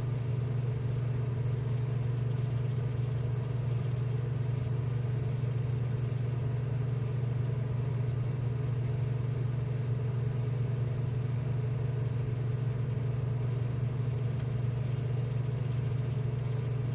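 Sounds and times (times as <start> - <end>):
low machine hum: 0.0 - 16.9.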